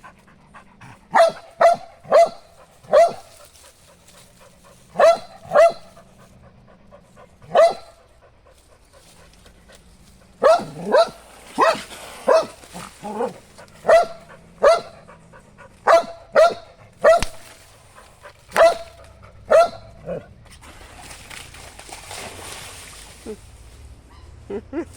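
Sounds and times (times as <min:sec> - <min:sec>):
dog barking: 0:01.1 - 0:03.4, 0:04.9 - 0:06.0, 0:07.4 - 0:08.0, 0:10.4 - 0:15.2, 0:15.8 - 0:17.6, 0:18.5 - 0:20.2.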